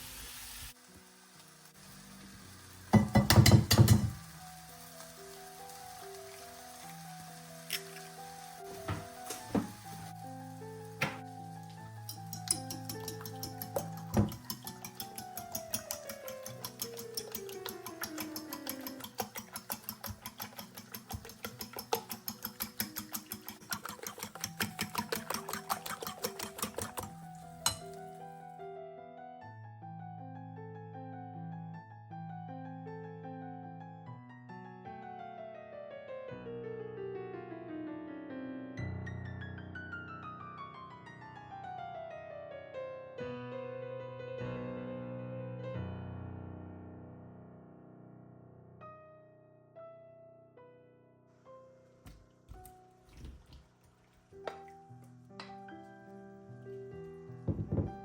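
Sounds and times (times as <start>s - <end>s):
piano music: 2.9s - 53.0s, 54.3s - 58.0s
fast even clicking: 12.6s - 27.1s.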